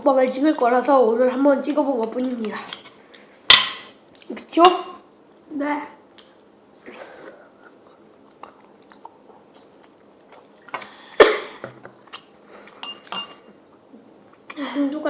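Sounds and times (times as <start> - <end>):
tableware clinking: 3.5 - 3.9, 12.8 - 13.5
chewing food: 7.6 - 11.0.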